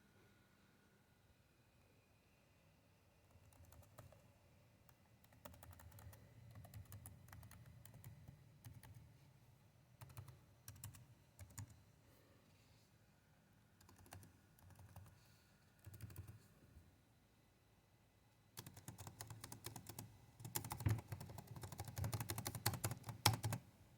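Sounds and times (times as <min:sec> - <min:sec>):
keyboard typing: 0:03.3 - 0:04.2, 0:05.2 - 0:09.0, 0:10.0 - 0:11.8, 0:13.8 - 0:15.2, 0:15.8 - 0:16.4, 0:18.6 - 0:23.6.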